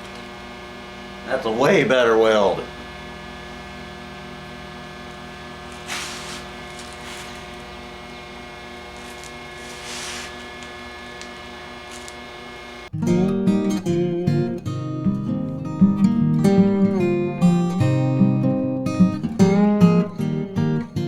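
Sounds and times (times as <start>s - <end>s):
welder electrical hum: 0.0s - 21.0s
short hissing: 5.7s - 7.4s.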